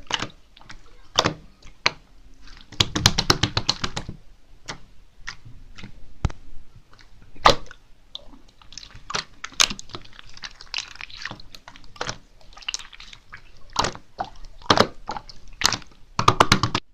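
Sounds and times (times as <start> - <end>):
slime squishing by hand: 0.0 - 16.9
slime clicking pops and crackles: 2.7 - 4.1, 8.6 - 16.9.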